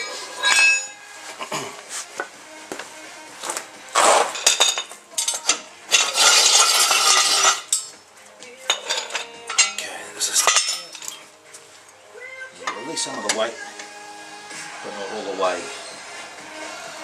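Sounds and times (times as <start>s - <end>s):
jack stand scraping: 3.9s - 7.8s
metal clanking and knocking: 4.3s - 7.9s.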